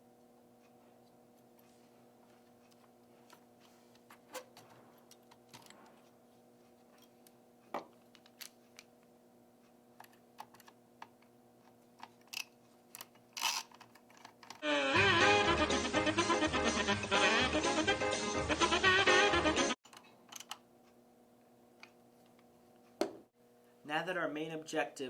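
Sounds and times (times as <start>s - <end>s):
music: 14.6s - 19.8s.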